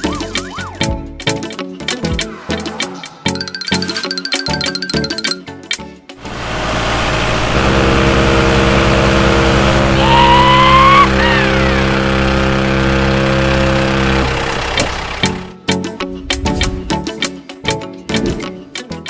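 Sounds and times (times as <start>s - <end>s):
engine running loudly: 6.2s - 15.5s.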